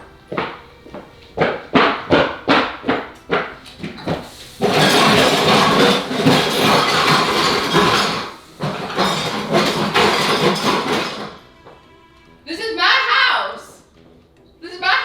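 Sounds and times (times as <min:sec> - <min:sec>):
dishes and pans clattering: 0:00.4 - 0:11.5.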